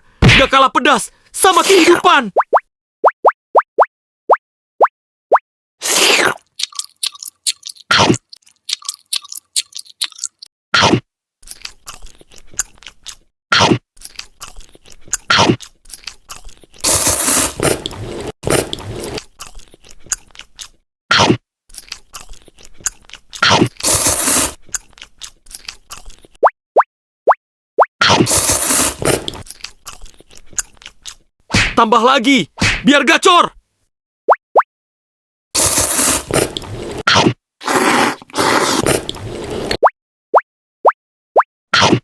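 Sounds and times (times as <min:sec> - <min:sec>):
wet crunchy chewing: 0:05.8 - 0:10.5, 0:11.4 - 0:26.4, 0:28.2 - 0:31.3, 0:35.6 - 0:39.7.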